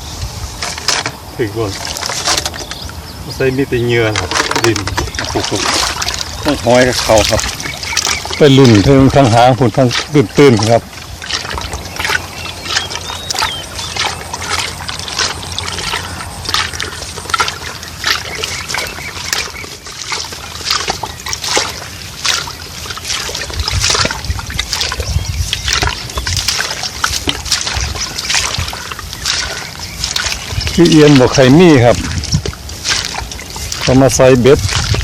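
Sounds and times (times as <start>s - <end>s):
shallow water sloshing and splashing: 0.0s - 35.0s.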